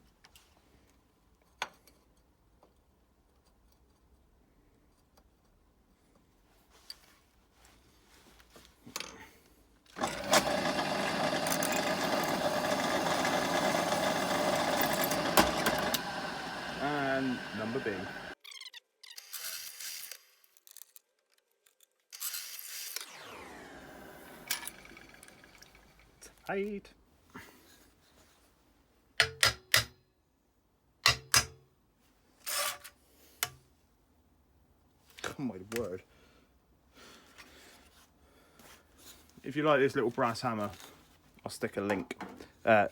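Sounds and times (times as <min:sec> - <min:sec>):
electric drill boring steel: 0:10.0 - 0:18.4, 0:22.9 - 0:26.2.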